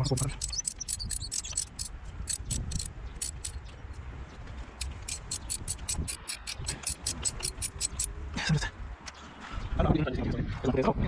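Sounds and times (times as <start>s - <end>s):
ratchet wrench clicking: 0.0s - 3.8s, 4.8s - 8.2s.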